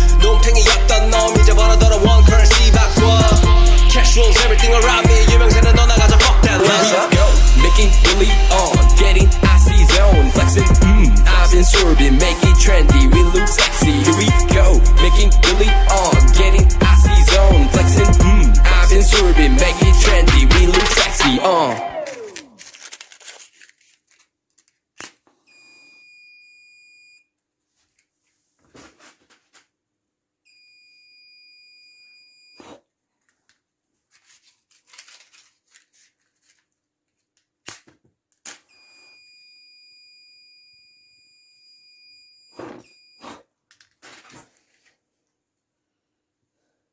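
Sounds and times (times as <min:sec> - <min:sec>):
fire alarm buzzer: 0:25.5 - 0:27.3, 0:30.5 - 0:32.6, 0:38.7 - 0:43.2.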